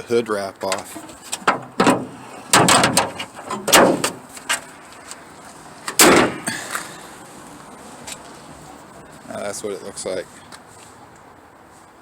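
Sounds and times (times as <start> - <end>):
loud clunks or bangs: 1.5 - 4.2, 5.9 - 6.6.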